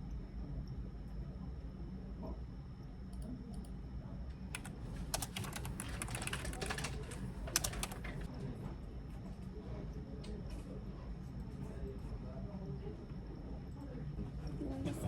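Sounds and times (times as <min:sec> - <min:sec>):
fast keyboard typing: 0:04.5 - 0:08.3.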